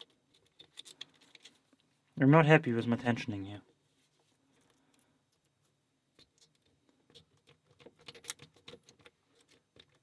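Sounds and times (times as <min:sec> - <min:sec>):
lock pick clicking in a lock: 0:06.2 - 0:10.0.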